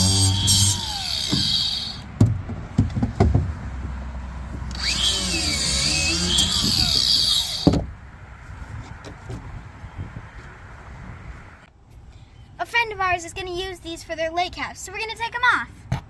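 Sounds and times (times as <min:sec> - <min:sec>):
power drill running: 0:00.0 - 0:02.0, 0:04.7 - 0:07.8.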